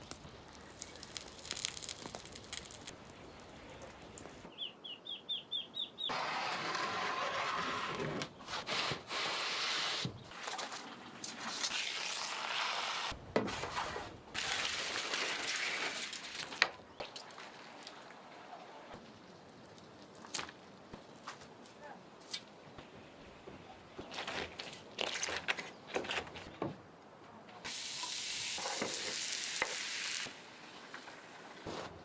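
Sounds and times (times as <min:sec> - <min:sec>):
food sizzling: 0:00.0 - 0:03.0, 0:27.7 - 0:31.4
light clicks and crackles: 0:00.0 - 0:04.5
bird chirping: 0:03.2 - 0:06.1.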